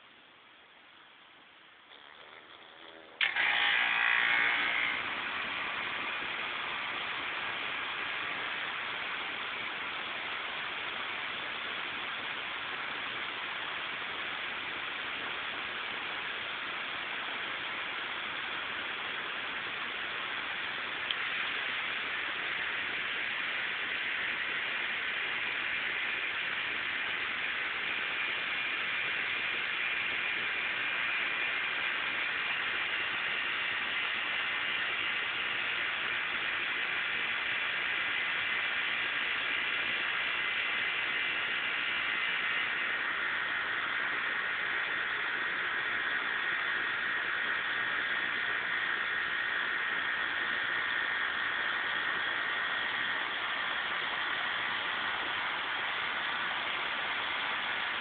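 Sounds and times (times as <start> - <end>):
insect chorus hissing: 4.0 - 58.0.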